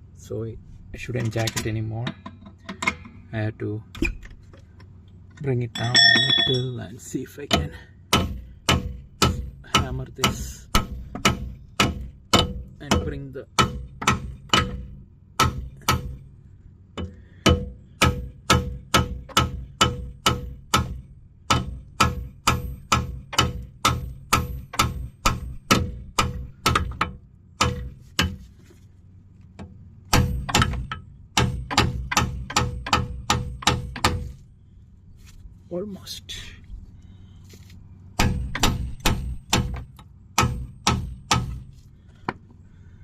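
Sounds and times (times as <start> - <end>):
hammer striking metal strut: 5.8 - 6.9, 7.5 - 16.2, 17.0 - 28.4, 30.1 - 34.3, 38.2 - 41.7.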